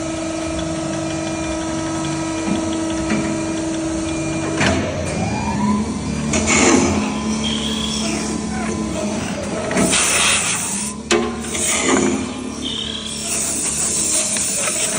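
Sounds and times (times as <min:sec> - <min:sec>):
wood lathe motor hum: 0:00.0 - 0:14.9.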